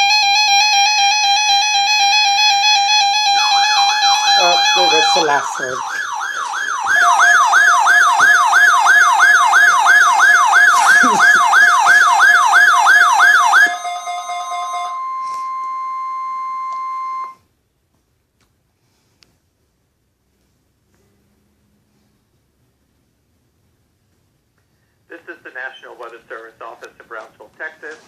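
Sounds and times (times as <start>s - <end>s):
electronic siren-like yelp: 0.0s - 17.4s
steady alarm tone: 0.0s - 17.4s.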